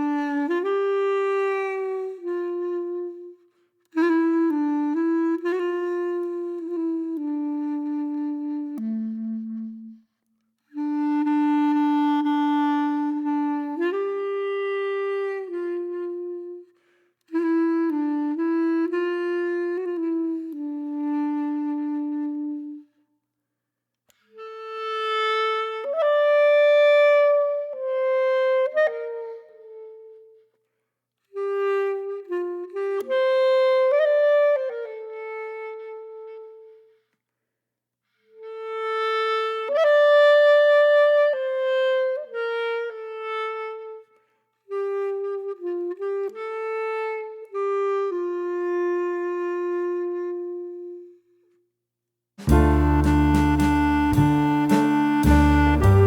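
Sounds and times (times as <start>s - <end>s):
solo reed wind melody: 52.4s - 56.0s.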